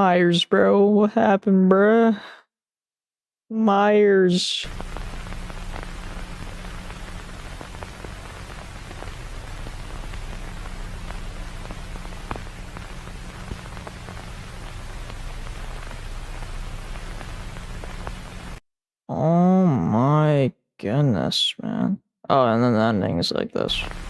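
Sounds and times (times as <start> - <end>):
faint crackles: 4.6 - 18.6, 23.7 - 24.0
steady hiss: 4.6 - 18.6, 23.6 - 24.0
low hum: 4.7 - 18.6.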